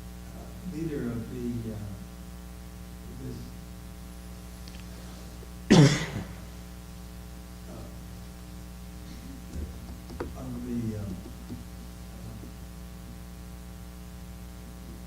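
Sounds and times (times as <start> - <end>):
mains hum: 0.0 - 15.0
loud cough: 5.7 - 6.4.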